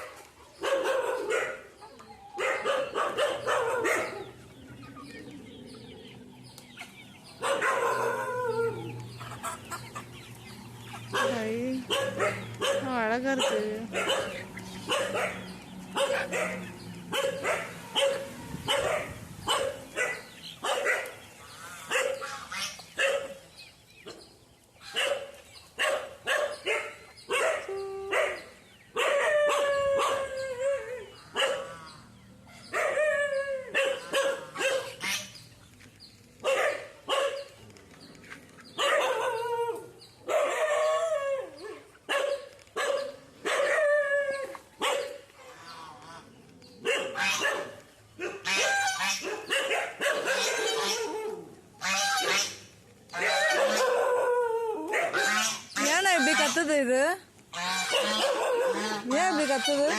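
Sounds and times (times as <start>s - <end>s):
dog barking: 0.0s - 1.7s, 2.3s - 4.3s, 7.4s - 8.4s, 11.1s - 21.2s, 21.9s - 22.3s, 23.0s - 23.4s, 24.9s - 30.4s, 31.3s - 31.8s, 32.6s - 33.1s, 33.7s - 35.0s, 36.4s - 37.5s, 38.8s - 39.5s, 40.2s - 41.0s, 41.6s - 43.9s, 44.8s - 45.2s, 46.8s - 51.1s, 53.2s - 54.2s, 54.9s - 55.4s, 57.8s - 59.5s
dog yelping: 0.6s - 4.2s, 7.4s - 8.9s, 11.0s - 21.1s, 24.9s - 31.7s, 32.7s - 35.0s, 36.4s - 37.5s, 38.8s - 45.2s, 46.8s - 52.5s, 53.2s - 56.5s, 57.7s - 59.9s.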